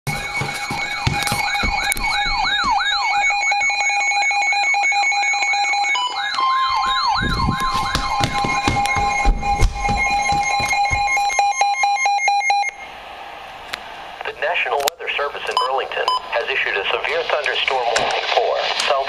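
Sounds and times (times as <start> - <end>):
electronic siren yelping: 0.1 - 12.9.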